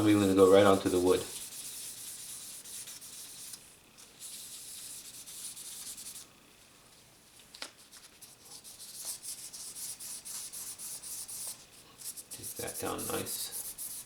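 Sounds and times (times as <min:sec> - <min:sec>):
sandpaper rubbing on metal: 0:00.0 - 0:03.6, 0:04.2 - 0:06.2, 0:08.6 - 0:14.0.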